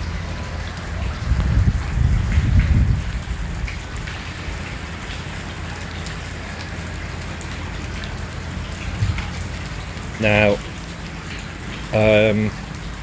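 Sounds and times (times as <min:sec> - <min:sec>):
heavy rain falling: 0:00.0 - 0:13.0
drops ticking on surfaces: 0:02.3 - 0:13.0
low rumble: 0:08.8 - 0:09.6.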